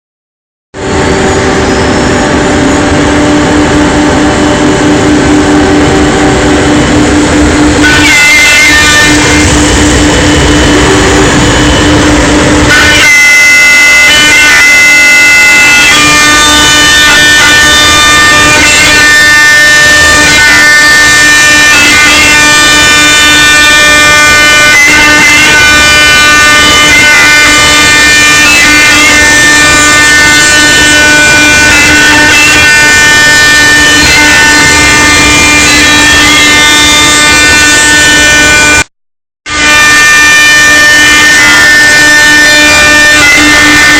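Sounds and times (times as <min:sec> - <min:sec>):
router spindle whining: 0:00.8 - 0:14.6
router spindle whine: 0:00.8 - 0:38.8.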